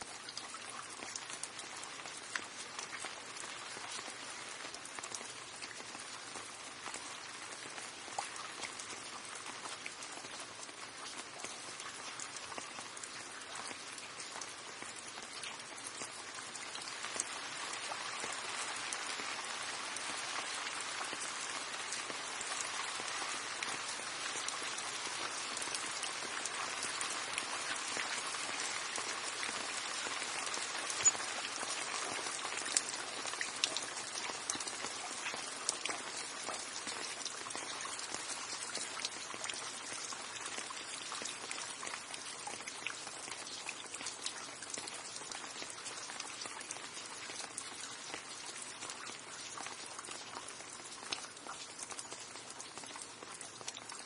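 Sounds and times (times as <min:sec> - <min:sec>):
steady rain: 0:00.0 - 0:54.0
loud single raindrops: 0:16.9 - 0:36.0.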